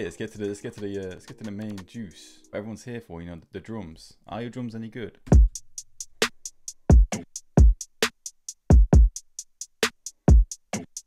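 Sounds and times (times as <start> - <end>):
hi-hats ticking: 0.0 - 1.9, 5.4 - 11.0
kick drums: 5.3 - 5.6, 6.9 - 7.8, 8.7 - 9.2, 10.3 - 10.5.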